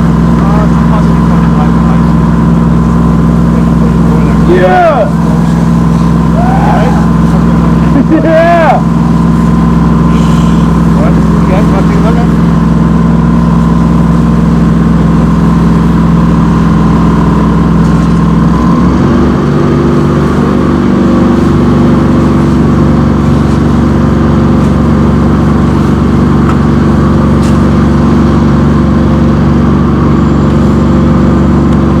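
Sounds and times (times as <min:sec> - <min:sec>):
engine running: 0:00.0 - 0:32.0.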